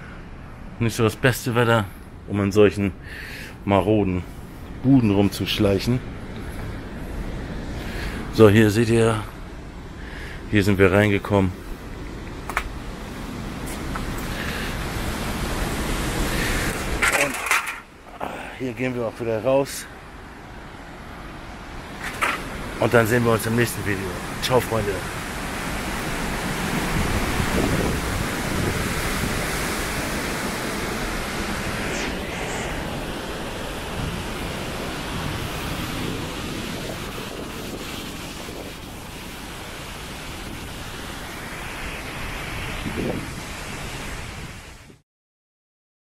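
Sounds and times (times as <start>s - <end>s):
storm wind on microphone: 11.0s - 18.0s, 20.1s - 45.0s.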